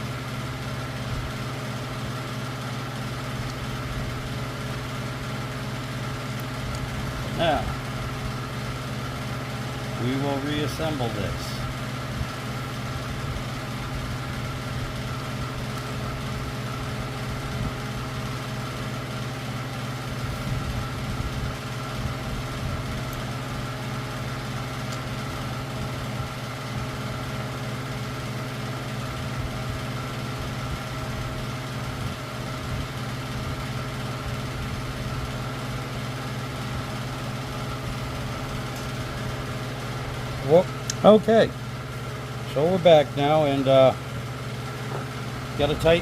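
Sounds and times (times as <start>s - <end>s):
steady machine hum: 0.0s - 46.0s.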